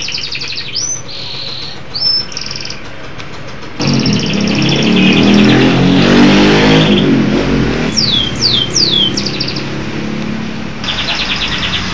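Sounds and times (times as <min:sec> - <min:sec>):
canary singing trills: 0:00.0 - 0:02.8, 0:03.8 - 0:05.9, 0:07.9 - 0:09.8, 0:10.8 - 0:11.9
vehicle engine passing by: 0:01.4 - 0:11.9.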